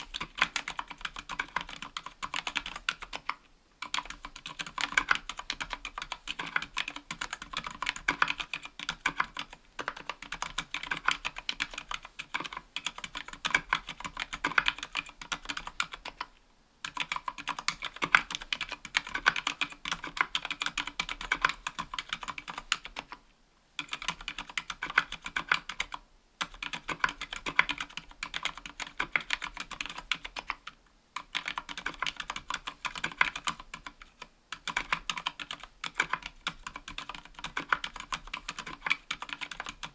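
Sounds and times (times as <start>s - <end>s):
fast typing on keyboard: 0.0s - 23.2s, 23.8s - 39.9s.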